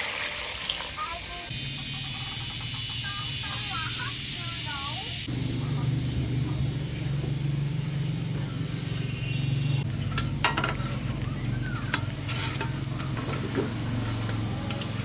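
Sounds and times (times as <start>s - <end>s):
light sizzle: 0.0s - 1.5s
steady low hum: 1.5s - 15.0s
metal utensil scraping a pot: 9.8s - 15.0s.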